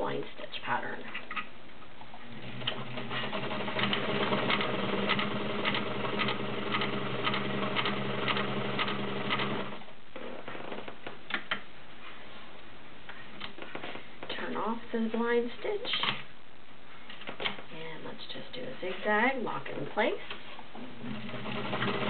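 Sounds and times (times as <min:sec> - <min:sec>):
sewing machine running: 0:02.3 - 0:09.8, 0:21.0 - 0:22.0.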